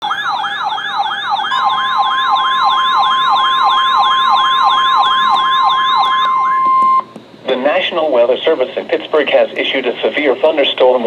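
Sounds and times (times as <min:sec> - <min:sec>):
rapid wailing warning siren: 0:00.0 - 0:07.1
steady warning alarm tone: 0:00.0 - 0:07.1.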